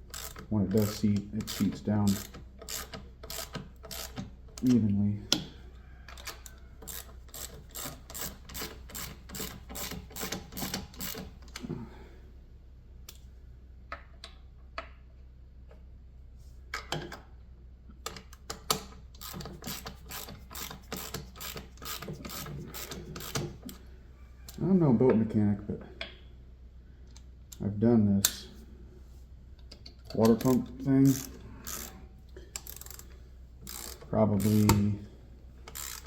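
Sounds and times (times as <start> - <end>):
ratchet wrench clicking: 0.0 - 4.6, 6.2 - 11.6, 18.3 - 23.8, 30.2 - 34.9, 35.6 - 36.0.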